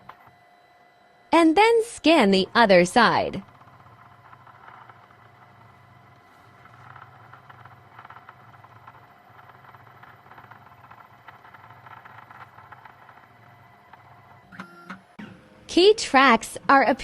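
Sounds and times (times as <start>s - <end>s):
faint motor hum: 0.0s - 17.0s.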